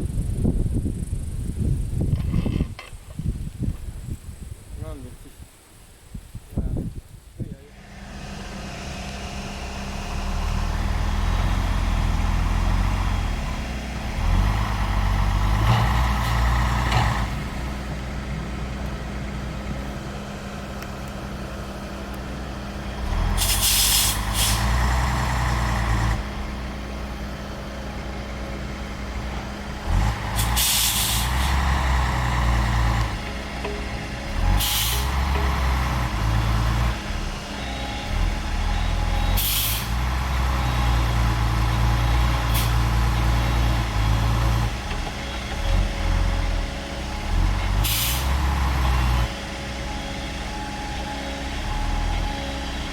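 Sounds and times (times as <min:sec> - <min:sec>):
diesel machinery engine revving: 0:07.7 - 0:52.9
sharp hisses of air: 0:23.4 - 0:24.7, 0:30.4 - 0:31.6, 0:34.6 - 0:35.1, 0:39.4 - 0:39.9, 0:47.8 - 0:48.4.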